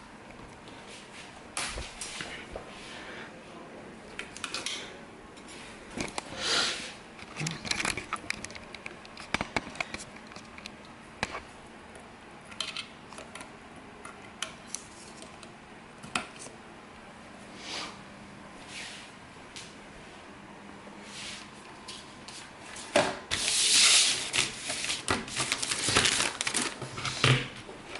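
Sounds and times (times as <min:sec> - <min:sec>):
faint steady hum: 0:00.0 - 0:27.9.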